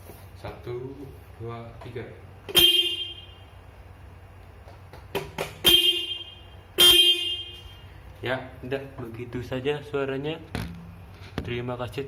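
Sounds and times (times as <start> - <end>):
scooter horn honking: 2.5 - 3.5, 5.6 - 8.0.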